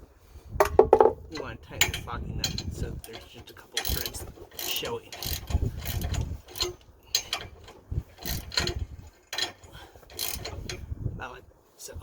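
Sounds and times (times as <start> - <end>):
ratchet wrench clicking: 1.8 - 10.8.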